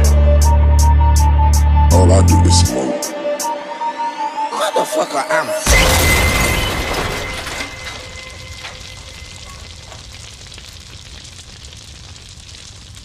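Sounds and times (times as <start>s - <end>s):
steady crackle: 5.7s - 13.0s.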